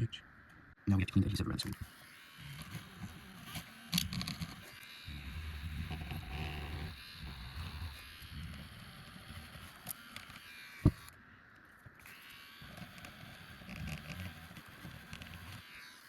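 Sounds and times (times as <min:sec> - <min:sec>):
tool scraping adhesive: 0:01.8 - 0:11.1, 0:12.1 - 0:15.7.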